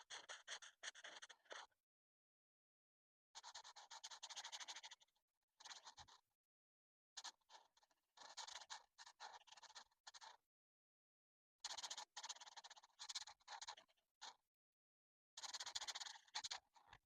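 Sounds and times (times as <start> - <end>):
coloring strokes scratching paper: 5.6 - 6.2.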